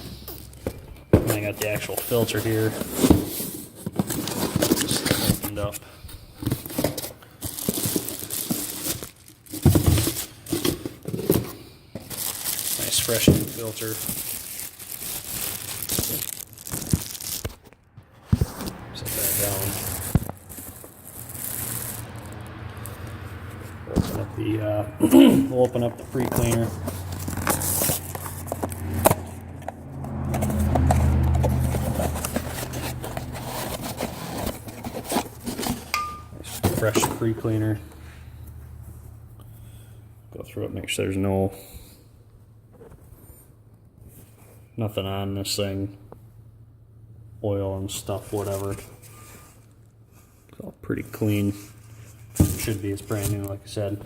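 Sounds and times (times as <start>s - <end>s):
packaging crinkling and tearing: 3.9s - 5.7s, 6.4s - 23.2s, 25.4s - 29.3s, 30.2s - 37.5s.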